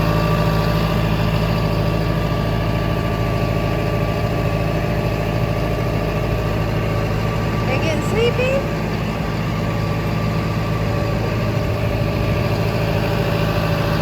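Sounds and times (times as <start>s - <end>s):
tractor engine running: 0.0s - 14.0s.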